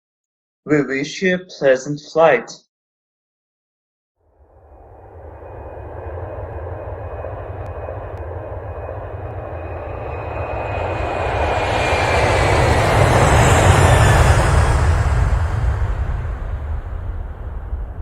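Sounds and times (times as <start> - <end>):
thin high engine whine: 4.2 - 18.0
jet engines rumbling: 4.4 - 18.0.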